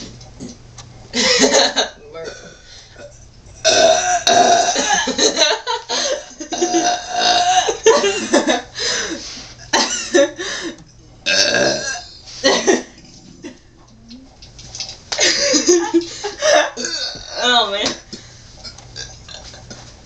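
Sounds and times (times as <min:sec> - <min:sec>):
girl belching: 0:03.6 - 0:05.1, 0:06.6 - 0:07.7, 0:11.2 - 0:12.1, 0:16.8 - 0:17.6.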